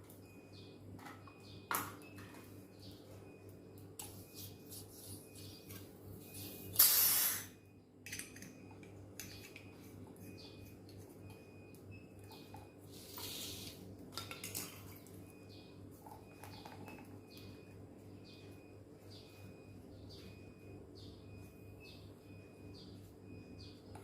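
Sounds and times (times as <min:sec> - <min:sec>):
faint high chirp: 0:00.2 - 0:13.8, 0:14.9 - 0:24.0
short hiss of escaping gas: 0:06.8 - 0:07.5.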